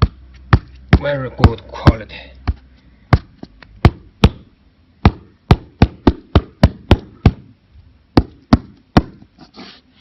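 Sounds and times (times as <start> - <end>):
knocks on foam mat: 0.0 - 4.4, 5.1 - 7.4, 8.2 - 9.2.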